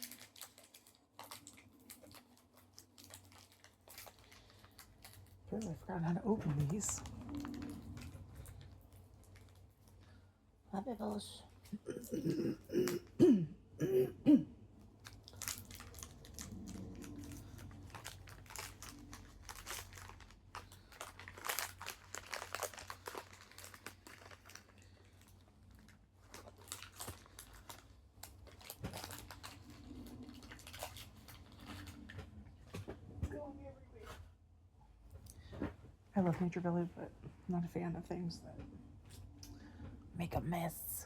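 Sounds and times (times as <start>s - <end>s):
granola bar crunching: 0.0s - 5.8s, 15.0s - 32.2s
plastic wrapper crinkling: 0.0s - 10.2s, 14.9s - 32.2s.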